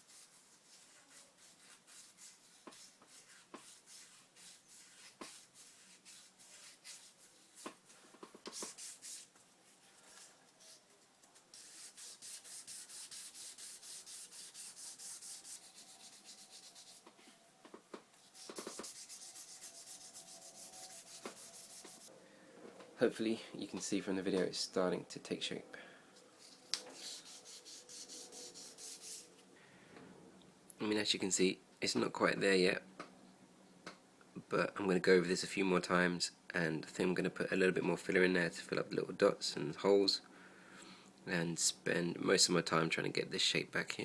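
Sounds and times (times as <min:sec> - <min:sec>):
sandpaper rubbing strokes: 0:00.0 - 0:10.9, 0:11.5 - 0:17.3, 0:18.2 - 0:22.1, 0:26.4 - 0:29.4.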